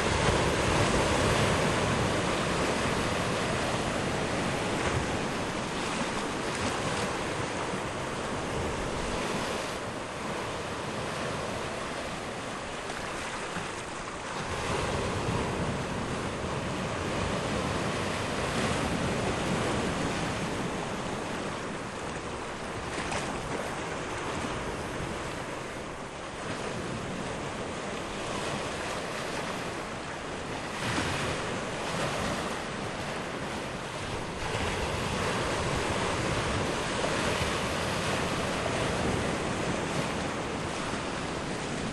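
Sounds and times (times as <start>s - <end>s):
sea waves washing onto shore: 0.0s - 41.9s
wind buffeting microphone: 14.3s - 41.9s.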